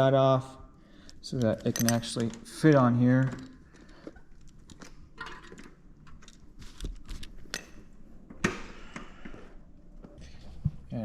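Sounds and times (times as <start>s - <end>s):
metal bicycle parts clicking: 1.3s - 4.9s.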